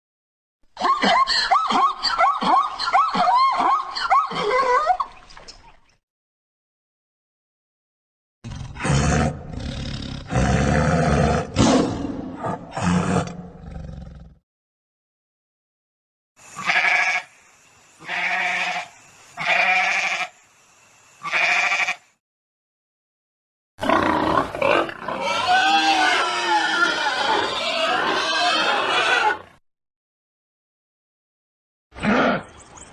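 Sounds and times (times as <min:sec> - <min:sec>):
grunting roar: 0:08.5 - 0:14.4, 0:23.8 - 0:29.4, 0:32.0 - 0:32.5
horse whinnying: 0:25.1 - 0:29.5.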